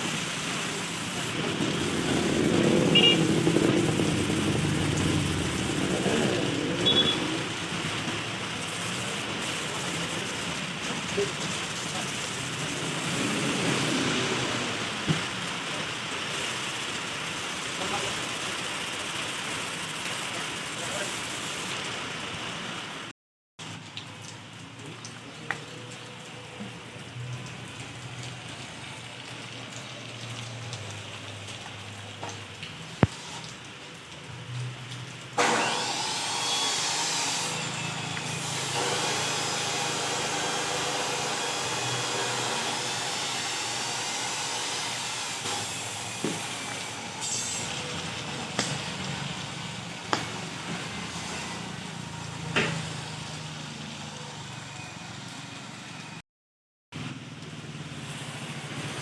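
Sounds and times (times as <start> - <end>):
power tool motor running: 35.4 - 47.9.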